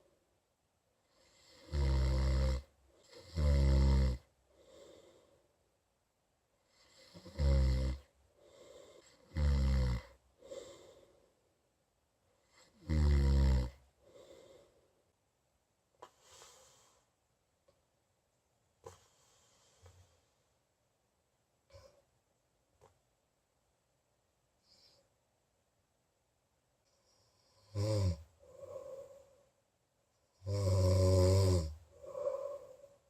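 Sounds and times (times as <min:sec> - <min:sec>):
person snoring: 0:01.1 - 0:05.2, 0:06.7 - 0:11.1, 0:12.6 - 0:14.7, 0:27.3 - 0:29.4, 0:30.4 - 0:33.0
faint breathing: 0:04.4 - 0:05.6, 0:08.3 - 0:09.3, 0:10.4 - 0:11.6, 0:14.0 - 0:15.1, 0:16.0 - 0:17.2, 0:18.8 - 0:20.6, 0:24.6 - 0:25.2, 0:26.9 - 0:29.6, 0:31.7 - 0:33.0.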